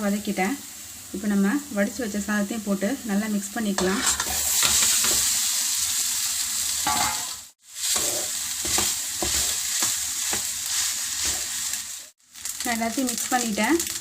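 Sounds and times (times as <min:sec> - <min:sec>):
oil sizzling: 0:00.0 - 0:14.0
spoon scraping pan stirring: 0:03.8 - 0:05.4, 0:06.9 - 0:11.9.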